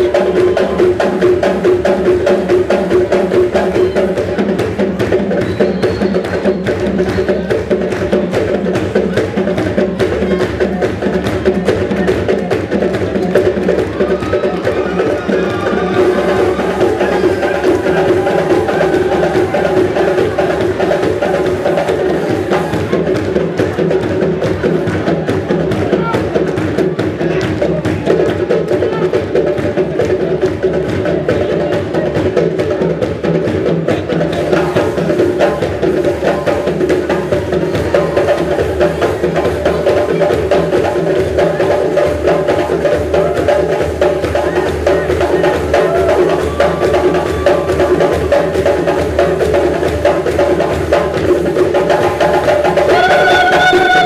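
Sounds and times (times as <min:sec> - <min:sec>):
fast dense drumming: 0:00.0 - 0:54.0.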